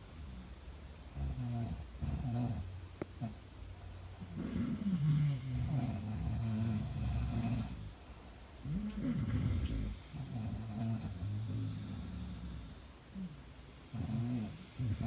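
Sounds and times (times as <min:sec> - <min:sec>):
woman snoring: 0:04.2 - 0:07.9, 0:08.6 - 0:13.3.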